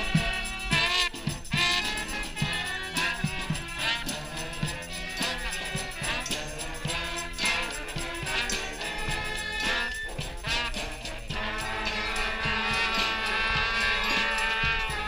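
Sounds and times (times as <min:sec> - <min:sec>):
brass band playing upbeat tune: 0:00.0 - 0:15.0
percussion beat: 0:00.0 - 0:15.0.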